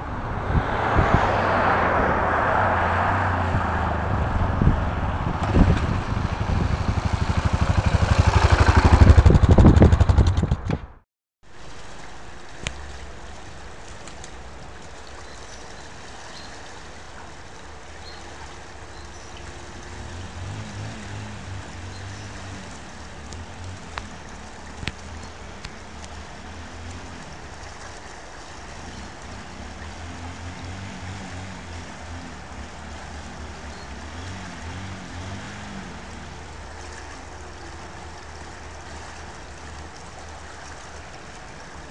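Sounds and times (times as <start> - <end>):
steady rushing noise: 3.1 - 11.0
small motorcycle engine running: 5.3 - 10.9.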